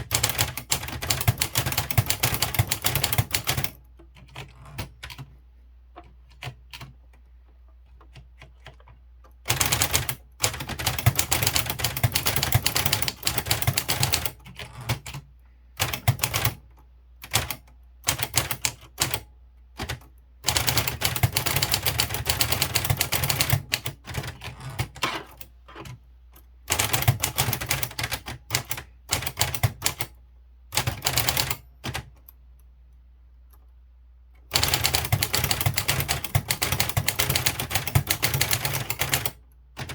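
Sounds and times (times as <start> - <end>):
typewriter key strikes: 34.5 - 39.9.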